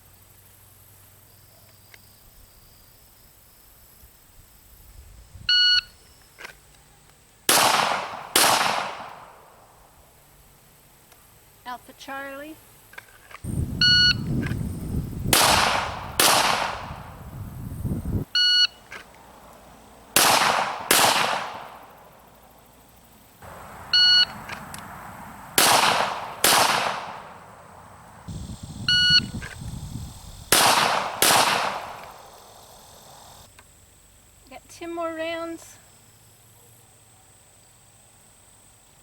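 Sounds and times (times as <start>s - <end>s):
pistol shots: 7.5s - 9.5s, 15.3s - 17.0s, 20.2s - 21.8s, 25.6s - 27.4s, 30.5s - 32.2s
shot timer beep: 13.8s - 14.2s.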